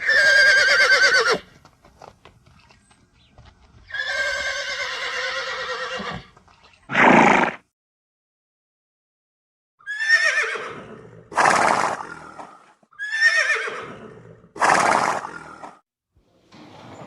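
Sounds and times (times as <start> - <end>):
horse neighing: 0.0 - 1.5, 3.9 - 6.3, 6.9 - 7.6, 9.8 - 15.7.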